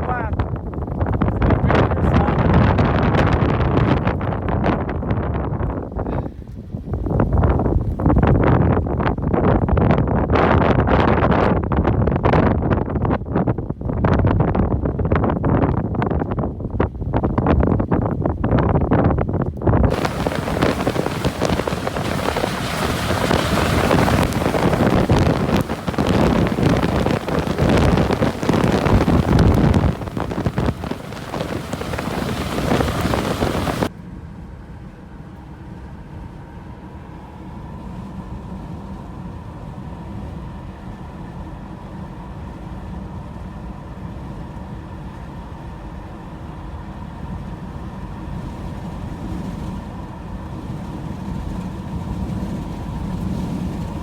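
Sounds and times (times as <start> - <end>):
gusty wind buffeting microphone: 0.0 - 33.9, 37.6 - 54.0
vehicle driving hum: 19.5 - 54.0
faint steady whine: 19.9 - 48.1.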